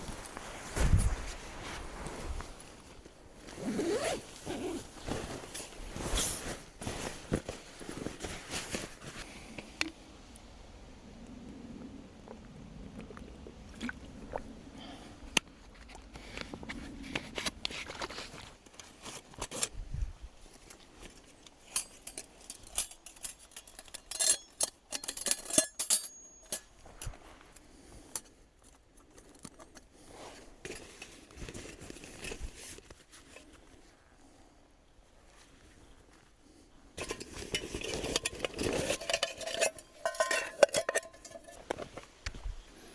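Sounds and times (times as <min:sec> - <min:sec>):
faint rustling: 0:00.0 - 0:09.9
camp gear clicking and clinking: 0:00.0 - 0:10.0, 0:13.8 - 0:19.8, 0:20.4 - 0:33.9, 0:37.0 - 0:42.9.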